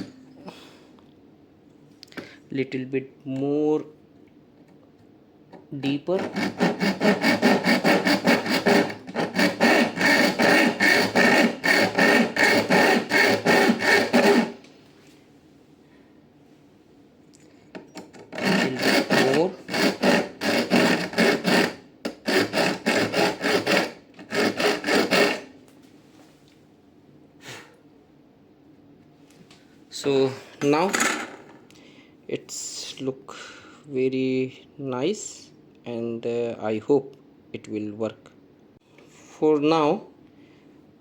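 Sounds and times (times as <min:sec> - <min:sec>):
hacksaw sawing metal: 0:06.1 - 0:14.6, 0:18.3 - 0:25.5.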